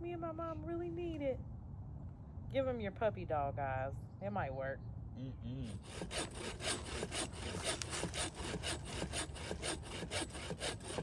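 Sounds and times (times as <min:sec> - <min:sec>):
hand saw cutting wood: 0:05.7 - 0:11.0.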